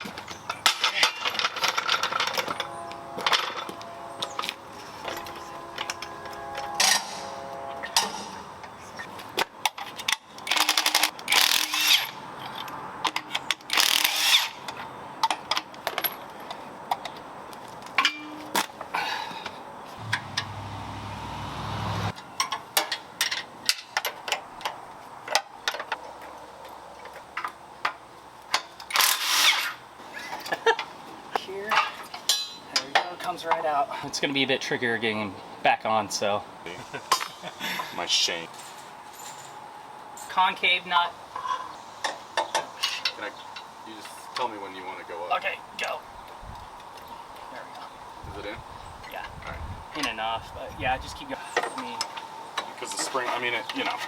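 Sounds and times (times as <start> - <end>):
metal tools clinking and knocking: 0.2 - 3.8, 31.7 - 33.1, 38.5 - 39.6
low steady buzz: 2.6 - 8.7, 20.0 - 22.1.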